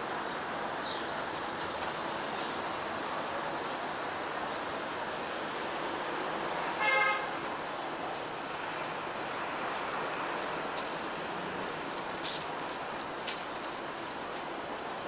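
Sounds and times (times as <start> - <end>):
traffic noise: 0.0 - 15.0
vehicle horn toot: 6.8 - 7.4.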